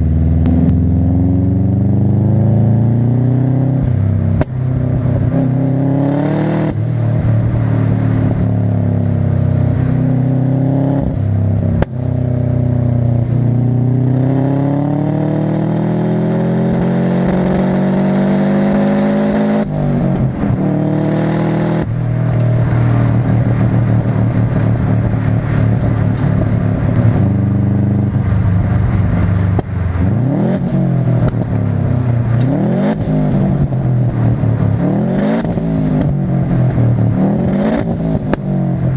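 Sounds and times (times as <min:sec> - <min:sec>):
car engine revving hard: 0:00.4 - 0:11.4, 0:13.9 - 0:38.9
exhaust pops: 0:03.8 - 0:05.4, 0:21.8 - 0:34.8.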